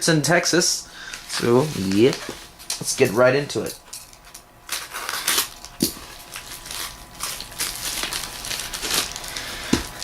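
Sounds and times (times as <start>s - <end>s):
plastic bag crinkling: 1.3s - 3.3s, 4.1s - 10.0s.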